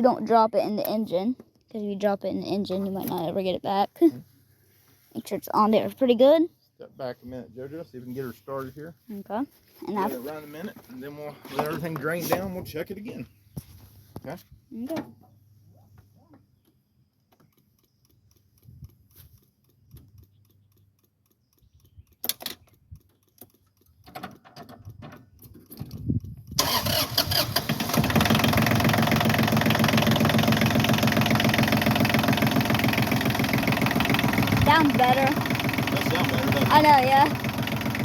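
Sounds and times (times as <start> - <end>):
diesel tractor engine starting: 26.5 - 38.0.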